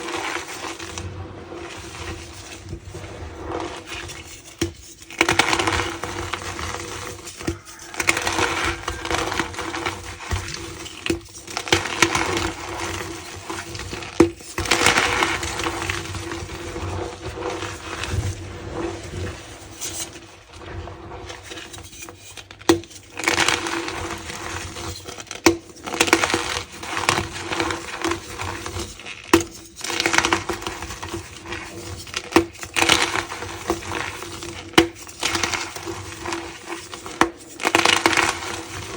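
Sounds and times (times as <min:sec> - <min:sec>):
chalk crunching and squeaking: 0:00.0 - 0:25.2.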